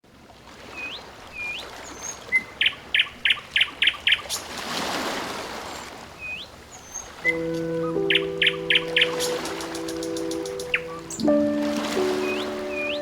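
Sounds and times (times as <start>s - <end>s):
birds whistling: 0.8s - 4.5s, 6.2s - 13.0s
sharp repeated bird notes: 7.3s - 13.0s.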